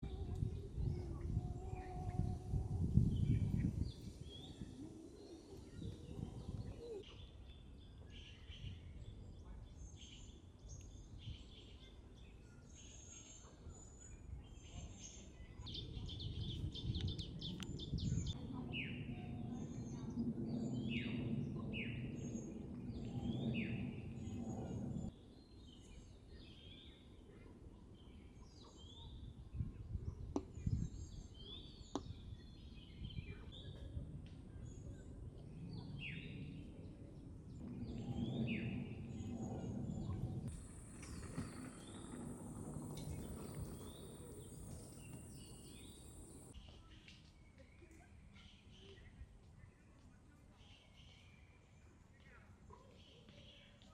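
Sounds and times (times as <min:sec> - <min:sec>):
low background rumble: 0:16.4 - 0:25.1, 0:34.2 - 0:46.6
songbirds whistling: 0:37.6 - 0:46.7.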